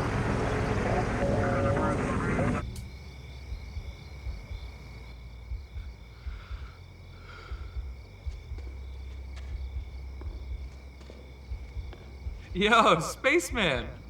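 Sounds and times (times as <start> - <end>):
low outdoor rumble: 0.0 - 14.0
insects chirping in high trills: 2.6 - 14.0.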